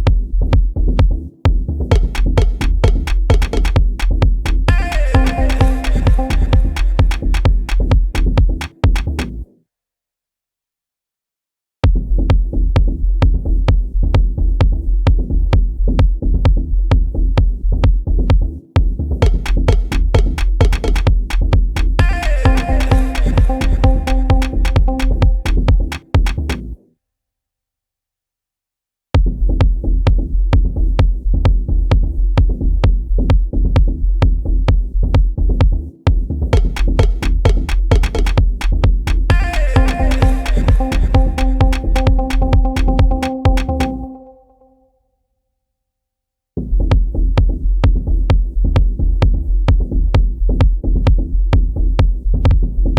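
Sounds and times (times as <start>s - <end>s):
drum machine beat: 0.0s - 9.3s, 11.8s - 26.6s, 29.2s - 44.3s, 46.7s - 52.9s.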